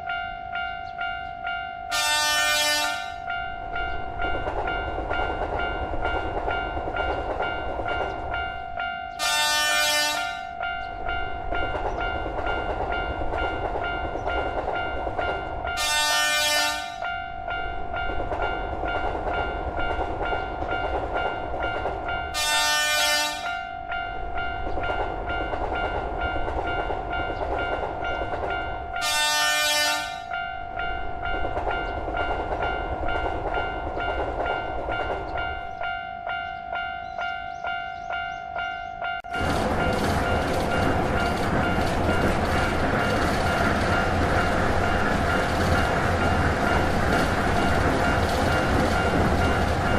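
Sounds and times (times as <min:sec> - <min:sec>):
train rumbling on track: 0:00.0 - 0:49.9
train horn blasts: 0:01.9 - 0:03.3, 0:09.1 - 0:10.6, 0:15.8 - 0:17.1, 0:22.3 - 0:23.7, 0:29.0 - 0:30.4
level-crossing alarm ringing: 0:25.4 - 0:49.9.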